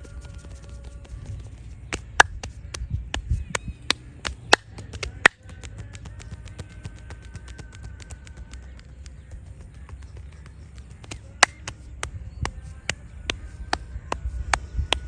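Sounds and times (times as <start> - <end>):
hands slapping and chopping: 1.9 - 8.6, 10.8 - 15.0.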